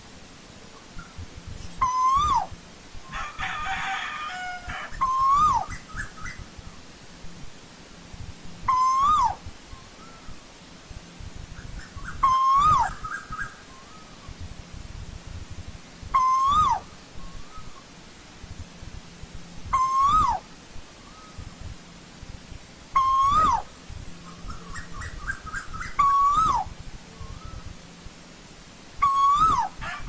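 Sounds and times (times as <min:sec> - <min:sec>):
koel whistled call: 0:01.8 - 0:02.5, 0:08.7 - 0:10.3, 0:16.2 - 0:17.8, 0:19.8 - 0:20.4, 0:23.0 - 0:23.7, 0:24.8 - 0:26.7, 0:29.0 - 0:29.8.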